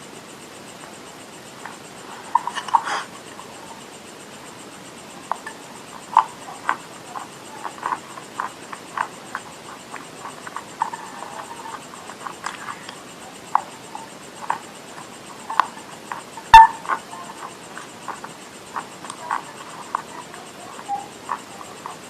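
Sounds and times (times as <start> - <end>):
chewing clay: 5.3 - 22.0.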